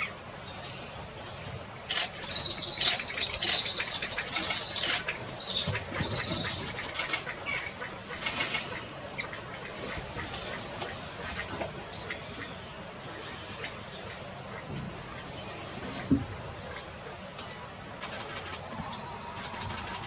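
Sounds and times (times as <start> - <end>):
bird rasping call: 1.8 - 15.4, 16.0 - 20.0
faint bird chirps: 16.7 - 20.0.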